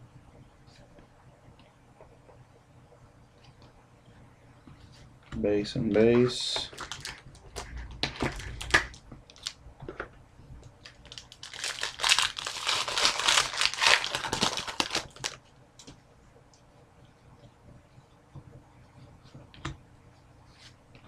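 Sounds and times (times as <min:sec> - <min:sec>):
packaging crinkling and rustling: 0:06.5 - 0:09.6, 0:10.8 - 0:15.4.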